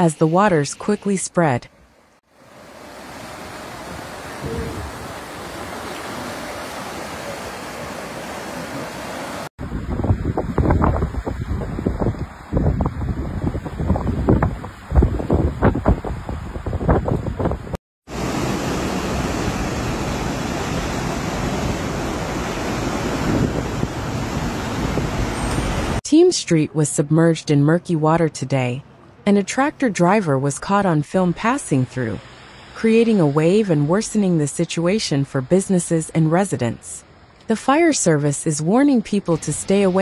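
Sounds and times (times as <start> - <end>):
floodwater rushing: 2.3 - 9.5, 18.1 - 26.0
wind buffeting microphone: 3.8 - 6.8, 9.6 - 17.8.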